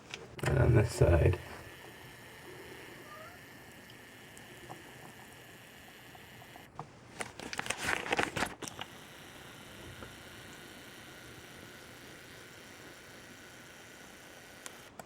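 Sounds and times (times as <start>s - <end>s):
faint steady hiss: 0.0s - 15.0s
handling noise crackling and rustling: 6.8s - 8.8s.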